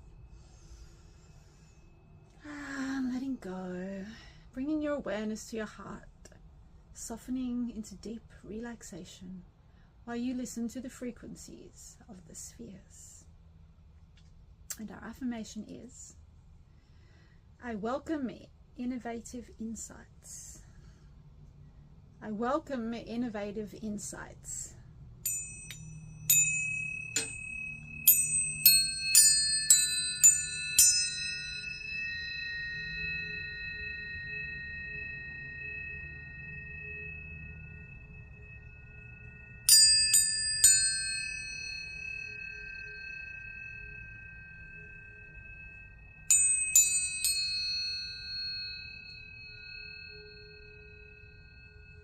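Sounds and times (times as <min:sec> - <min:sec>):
tuning forks ringing: 0:24.5 - 0:52.0.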